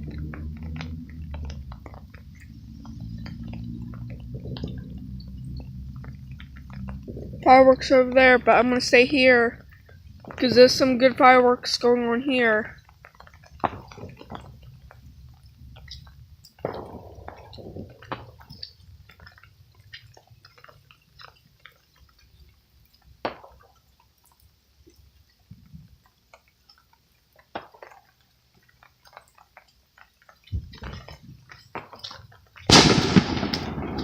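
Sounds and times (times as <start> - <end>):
faint clicks and crackles: 0.0 - 34.0
distant fireworks bangs: 13.6 - 14.8, 15.8 - 19.4, 31.8 - 34.0.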